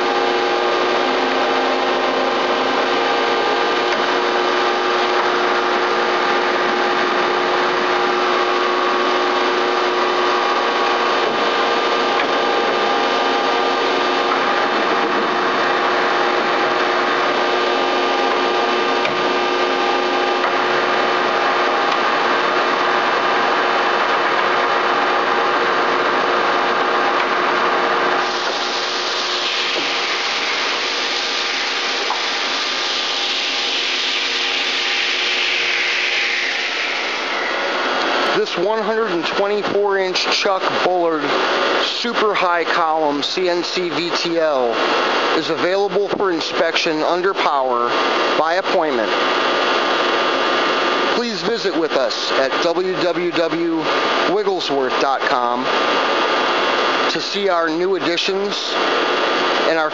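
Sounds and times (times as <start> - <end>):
lathe mechanical hum: 0.0 - 59.9
bright hiss: 28.2 - 38.3.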